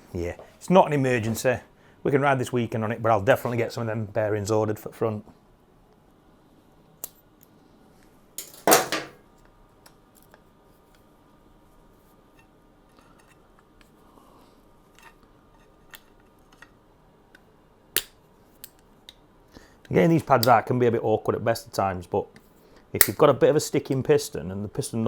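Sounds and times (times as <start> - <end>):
metal parts clattering scrape: 8.4 - 9.2
metal tools clicking and clinking: 8.4 - 9.2.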